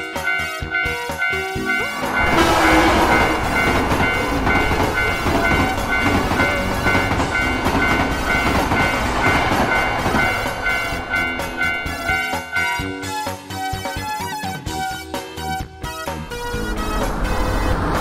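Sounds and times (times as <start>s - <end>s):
train rumbling and clattering: 0.0s - 13.4s, 16.1s - 18.0s
railroad crossing bell ringing: 0.0s - 14.0s.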